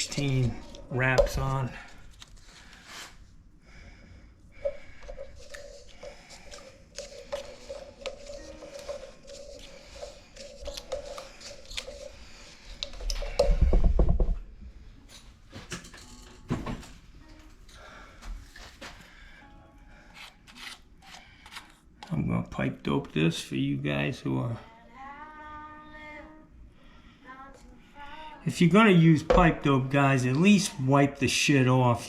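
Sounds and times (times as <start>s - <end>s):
tape rubbing and clicking: 4.6s - 13.5s, 20.2s - 21.8s.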